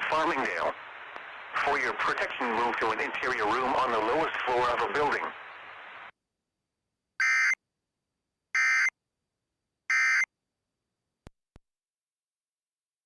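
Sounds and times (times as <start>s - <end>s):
harsh digital data squawks: 7.2s - 7.6s.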